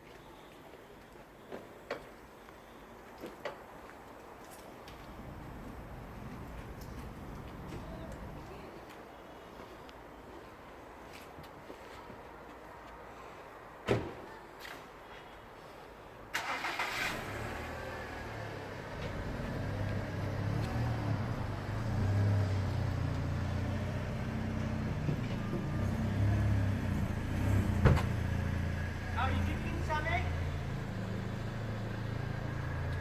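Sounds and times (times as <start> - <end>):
thump: 13.8 - 14.3, 27.8 - 28.2
car engine starting and idling: 16.3 - 33.0.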